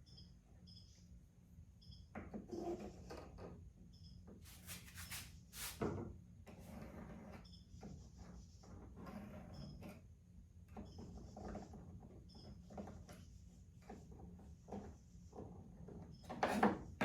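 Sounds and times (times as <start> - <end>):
short scraping sounds: 4.5 - 5.8.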